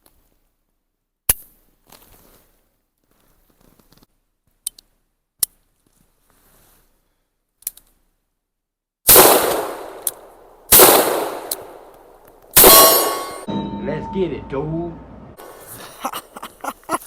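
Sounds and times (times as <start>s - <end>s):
loud gunshots echoing: 9.1s - 10.0s, 10.7s - 11.9s, 12.5s - 13.5s.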